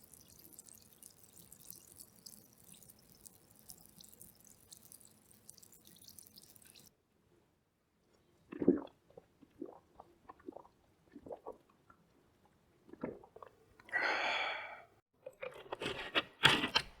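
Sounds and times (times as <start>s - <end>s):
gulping swallows: 8.5s - 11.7s
breathy exhale: 13.9s - 14.9s.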